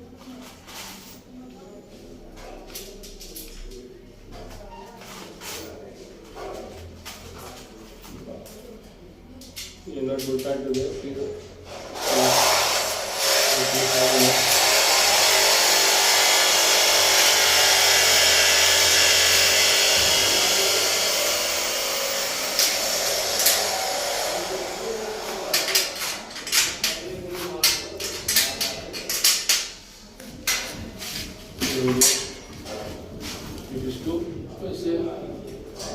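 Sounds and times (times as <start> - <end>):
power tool whining: 11.8 - 25.9.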